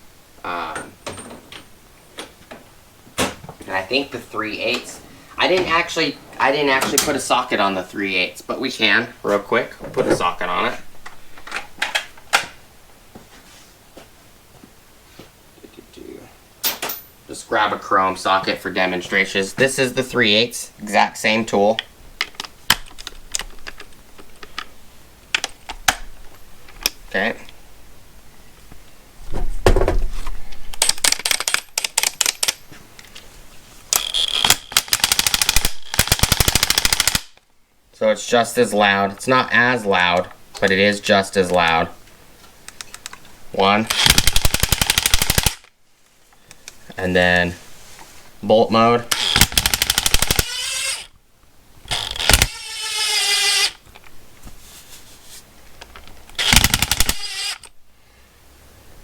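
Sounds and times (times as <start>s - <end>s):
impact wrench rattling: 30.7s - 32.6s, 33.9s - 37.4s, 43.8s - 45.7s, 49.1s - 51.1s, 51.9s - 53.8s, 55.9s - 57.8s.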